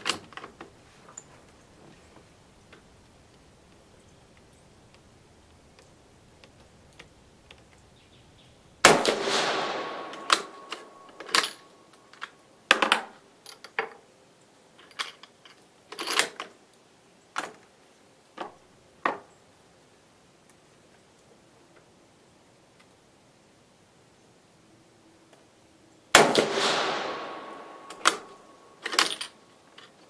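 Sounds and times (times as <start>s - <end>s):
rifle shot with ringing echo: 8.8s - 11.9s, 26.2s - 28.8s
rifle bolt clicking: 27.2s - 29.2s.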